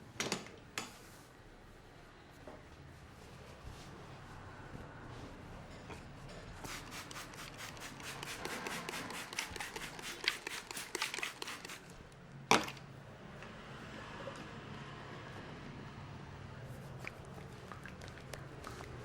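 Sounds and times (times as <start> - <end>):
hands rubbing hair and scalp: 3.0 - 4.4, 6.5 - 12.0.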